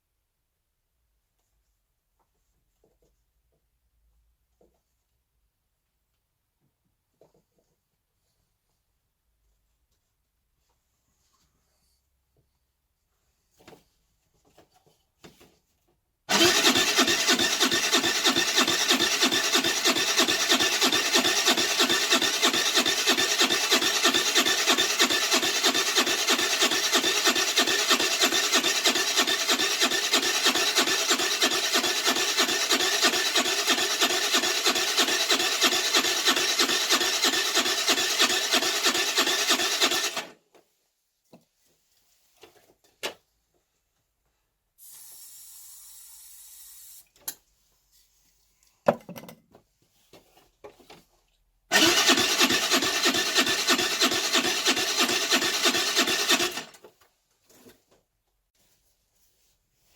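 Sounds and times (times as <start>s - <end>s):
electric starter cranking engine: 16.3s - 40.4s, 51.7s - 56.9s.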